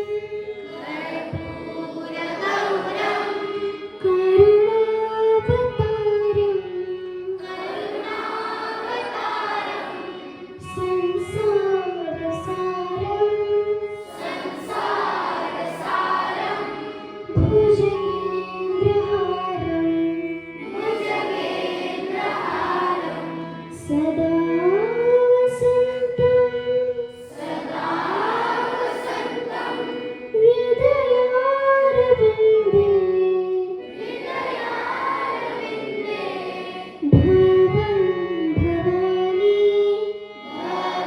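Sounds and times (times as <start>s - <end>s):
children singing in unison: 0.0s - 4.8s, 7.4s - 12.2s, 13.7s - 24.2s, 27.1s - 30.5s, 33.8s - 37.3s, 40.4s - 41.0s.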